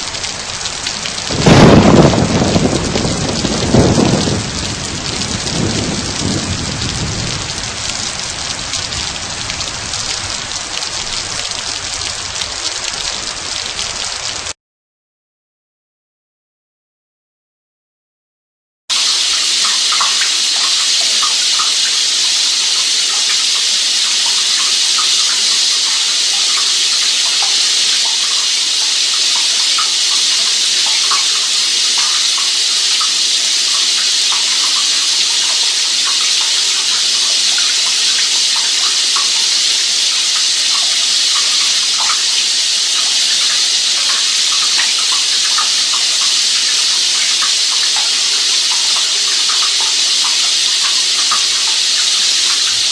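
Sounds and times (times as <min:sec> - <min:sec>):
small water splashes: 0:00.0 - 0:14.5
running water rushing: 0:00.0 - 0:14.6, 0:18.9 - 0:52.9.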